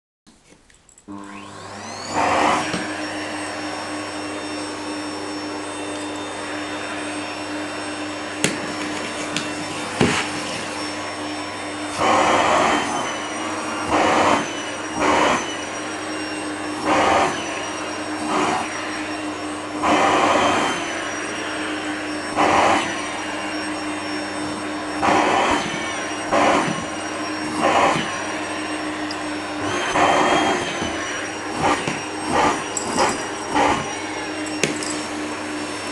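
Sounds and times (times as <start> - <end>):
vacuum cleaner whining: 1.0 - 35.9
vacuum nozzle on fur: 1.1 - 35.9.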